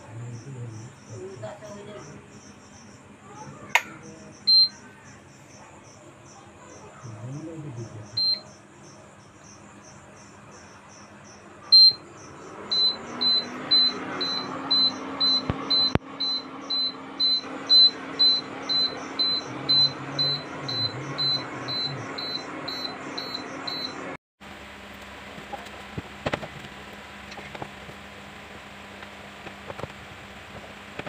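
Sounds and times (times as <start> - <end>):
high-pitched buzzer beeping: 4.5 - 4.8, 11.7 - 12.0, 12.7 - 24.2.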